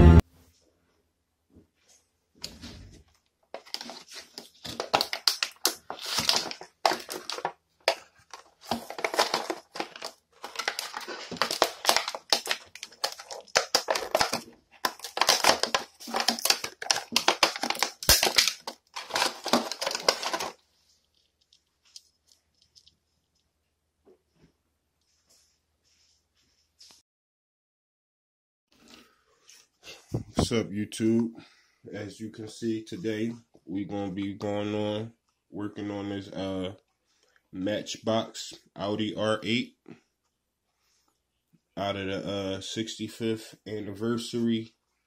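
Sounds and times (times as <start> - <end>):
crinkling and crunching handling noise: 1.8 - 26.2.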